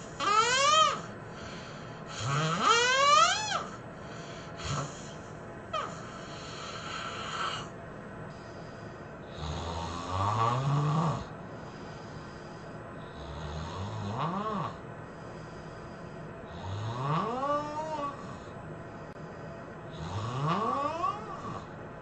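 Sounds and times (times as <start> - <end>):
person snoring: 0.0 - 3.7, 4.5 - 7.7, 9.3 - 11.3, 13.0 - 14.8, 16.5 - 18.5, 19.9 - 21.7
faint hissing breaths: 0.0 - 22.0.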